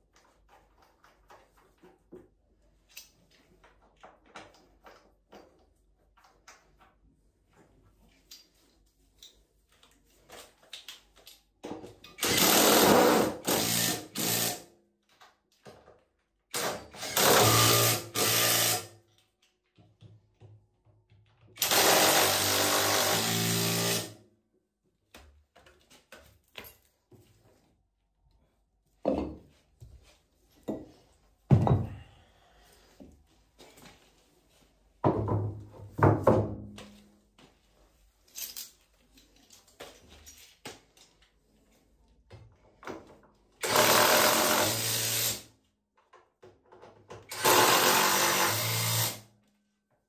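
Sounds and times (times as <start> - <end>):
power drill running: 12.2 - 14.6, 17.0 - 18.9, 21.6 - 24.2, 43.6 - 45.4, 47.3 - 49.2.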